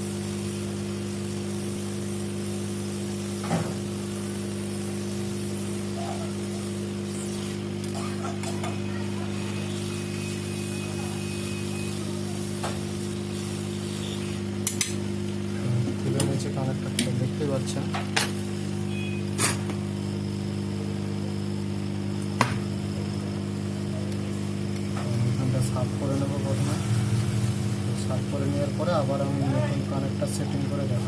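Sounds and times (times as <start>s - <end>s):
hot air gun blowing: 18.4s - 19.8s.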